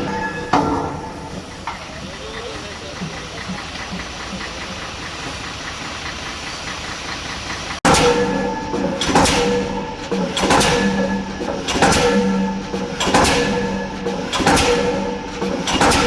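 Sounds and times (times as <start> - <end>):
pile hammer heavy blows: 0.0 - 1.9, 7.8 - 16.0
steady machine hum: 0.0 - 16.0.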